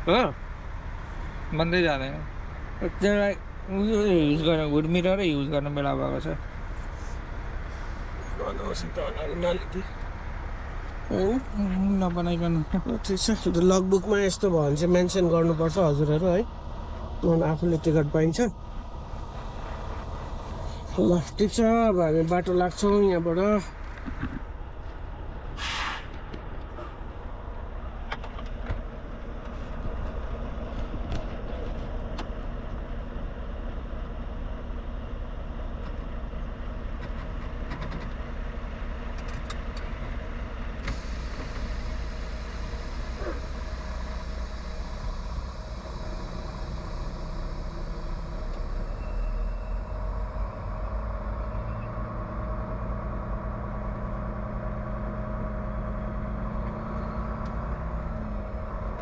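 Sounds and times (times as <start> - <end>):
truck engine humming: 0.0 - 59.0
air hiss: 25.6 - 26.2, 40.9 - 48.5.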